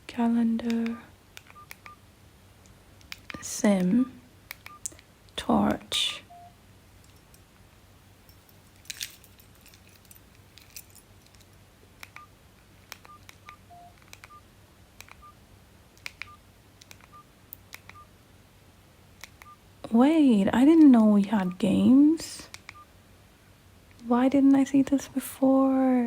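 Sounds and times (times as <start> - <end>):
short phone beeps: 6.3 - 6.6, 13.1 - 14.4.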